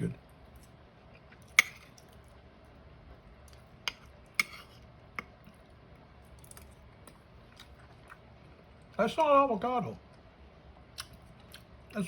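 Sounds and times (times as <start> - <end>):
chewing: 6.3 - 8.3, 10.9 - 11.7.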